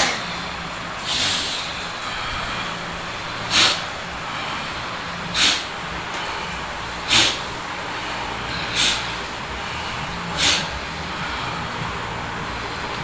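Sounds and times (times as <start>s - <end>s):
low hum: 0.0s - 13.0s
person forcing out breath: 8.4s - 11.9s.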